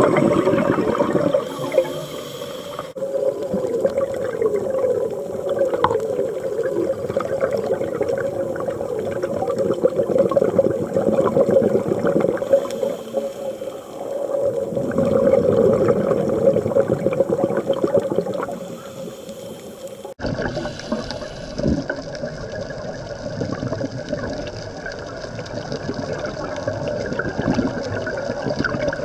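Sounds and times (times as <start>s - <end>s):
diver breathing through regulator: 0.0s - 3.1s, 11.9s - 17.3s
air bubbling underwater: 0.0s - 20.8s.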